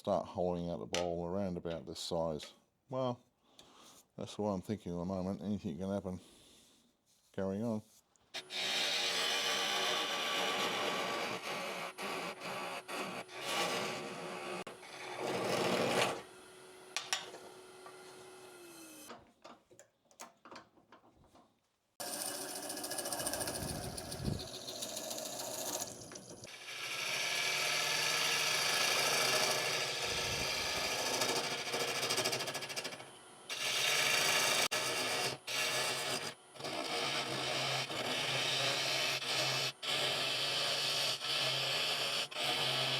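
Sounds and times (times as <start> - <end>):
gouge rasping wood on lathe: 8.4 - 16.3, 22.0 - 42.9.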